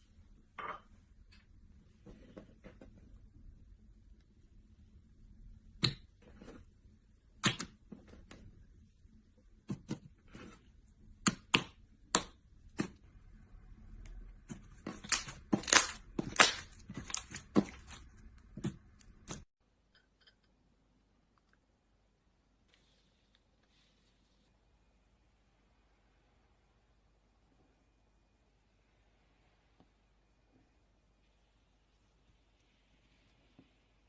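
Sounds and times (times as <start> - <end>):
slime popping and crackling: 14.9 - 18.0.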